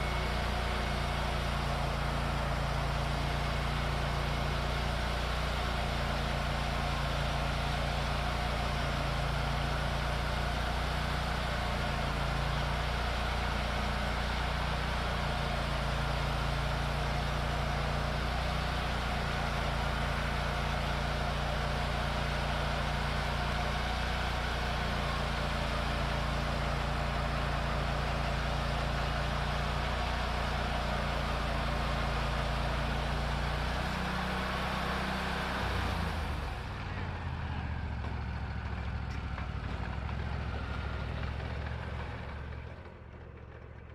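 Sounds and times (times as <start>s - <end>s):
band sawmill engine under load: 0.0s - 43.9s.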